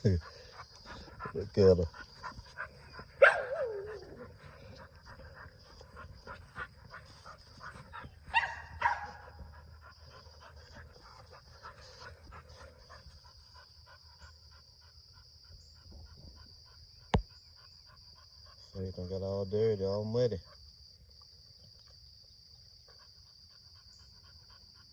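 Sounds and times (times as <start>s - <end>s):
dog panting: 0.0s - 19.3s, 22.8s - 24.9s
dog barking: 2.9s - 5.2s, 7.9s - 9.5s.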